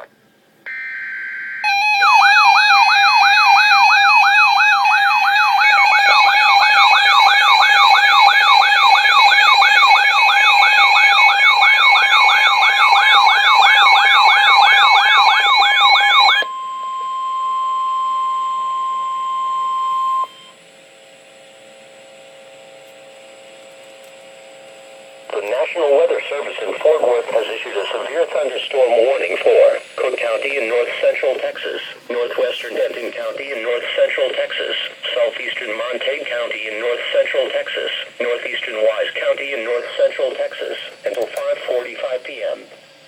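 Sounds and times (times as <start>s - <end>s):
faint hum: 0.0s - 43.0s
wailing electronic alert tone: 0.7s - 20.5s
steady single tone: 16.4s - 20.6s.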